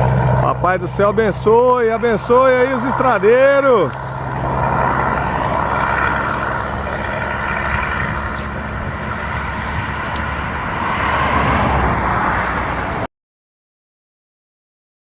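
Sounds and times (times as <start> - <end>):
vehicle engine running: 0.0 - 13.0
road noise: 0.0 - 13.1
sharp ticks: 10.0 - 10.3.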